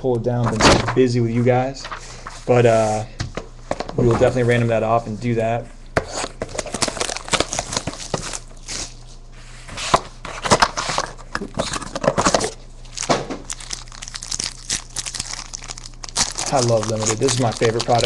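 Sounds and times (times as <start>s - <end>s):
plastic wrapping crinkling and tearing: 6.5s - 9.0s, 11.0s - 18.0s.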